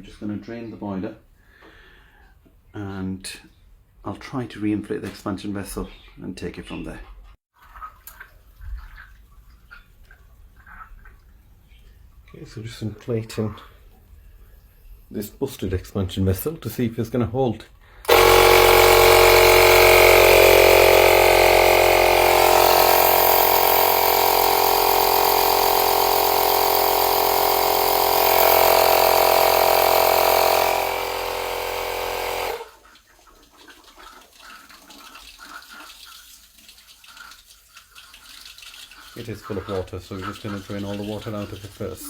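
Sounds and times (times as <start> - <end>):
electric air pump running: 18.1 - 32.7.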